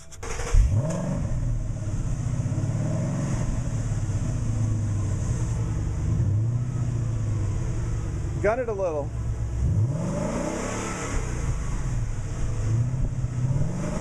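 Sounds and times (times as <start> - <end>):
car engine revving and idling: 0.0 - 14.0.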